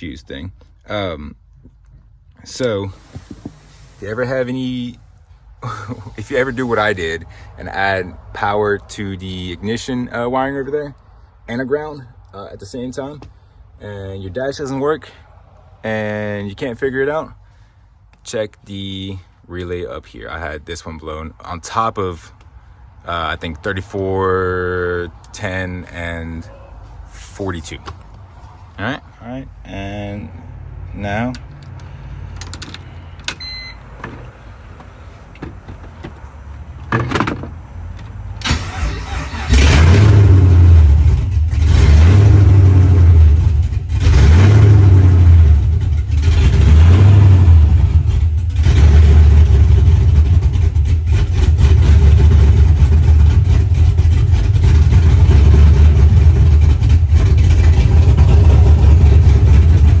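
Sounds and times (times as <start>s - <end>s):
car engine starting and revving: 2.4s - 9.4s, 30.5s - 60.0s.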